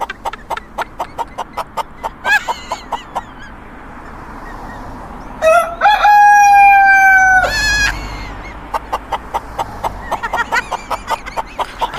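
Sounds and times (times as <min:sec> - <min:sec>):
rooster clucking: 0:11.6 - 0:11.9.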